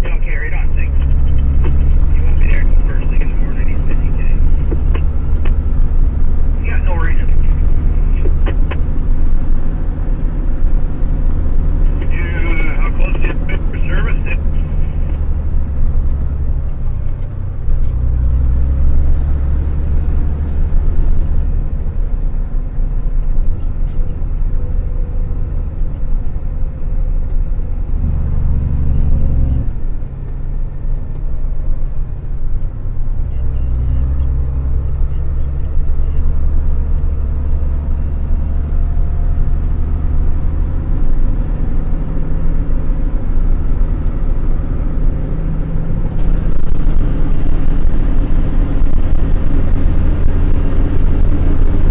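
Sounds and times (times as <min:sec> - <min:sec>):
diesel engine drone from cab: 0:00.0 - 0:51.9.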